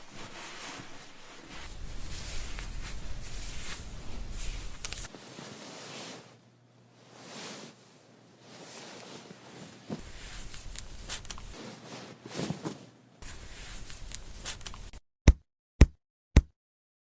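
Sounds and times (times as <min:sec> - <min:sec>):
hands rustling in hair: 0:00.0 - 0:06.4, 0:08.4 - 0:14.9.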